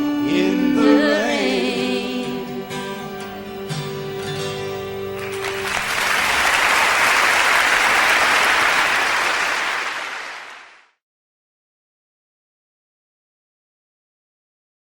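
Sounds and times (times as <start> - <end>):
audience applause: 5.2 - 11.0.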